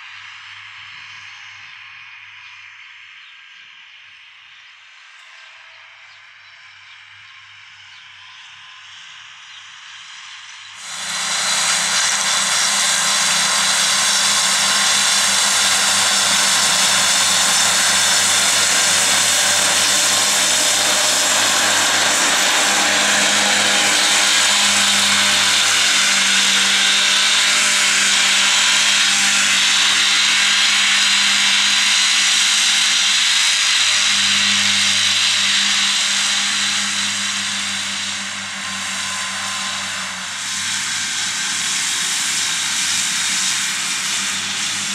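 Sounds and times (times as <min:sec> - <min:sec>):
tractor engine drone: 0:04.8 - 0:44.9
mower high rushing whine: 0:09.8 - 0:44.9.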